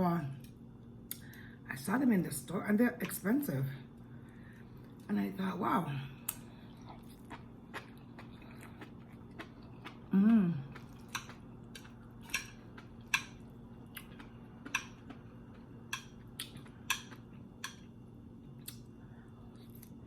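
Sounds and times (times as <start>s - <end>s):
chewing food: 6.2s - 17.9s, 18.5s - 20.0s
person humming: 10.1s - 10.7s.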